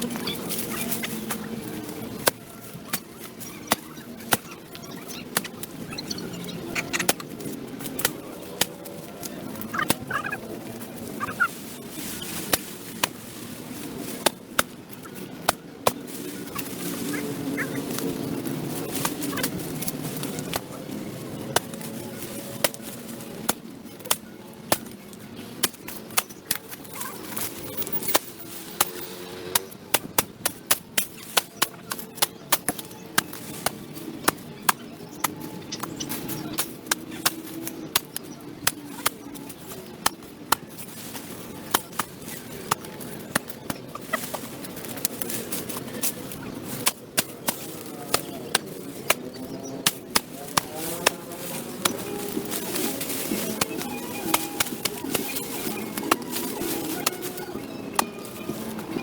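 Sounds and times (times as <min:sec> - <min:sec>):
hand tool chopping overgrowth: 0:25.6 - 0:59.0.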